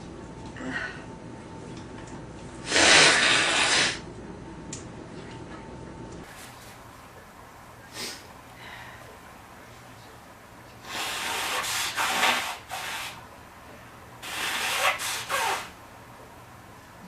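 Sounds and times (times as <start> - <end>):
person blowing nose: 2.6 - 4.0, 10.8 - 13.2, 14.2 - 15.8.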